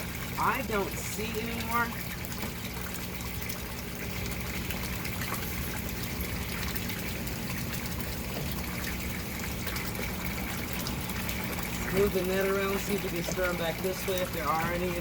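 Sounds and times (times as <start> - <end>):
low steady hum: 0.0 - 15.0
water pouring into a tank: 0.0 - 15.0.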